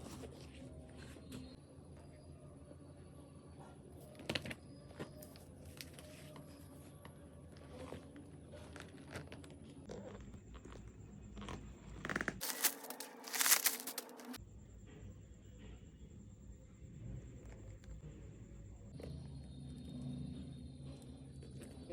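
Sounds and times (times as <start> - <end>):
packaging crinkling and rustling: 12.4 - 14.4
packaging tearing: 12.4 - 14.4.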